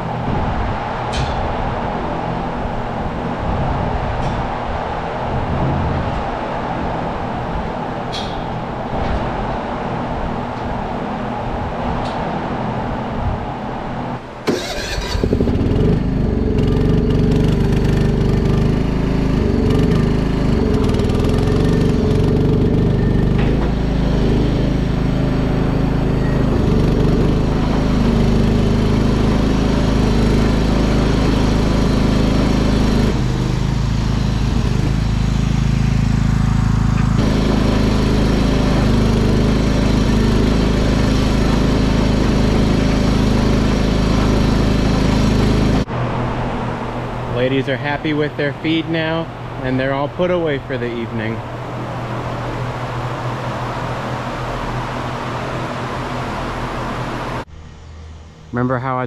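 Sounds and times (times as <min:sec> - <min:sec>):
farm machine engine running: 0:14.4 - 0:57.4.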